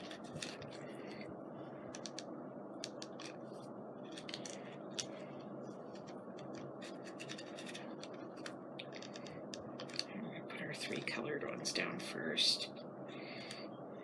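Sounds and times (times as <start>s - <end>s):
paper scratching and rustling: 0.0s - 1.2s
steady background hiss: 0.0s - 14.0s.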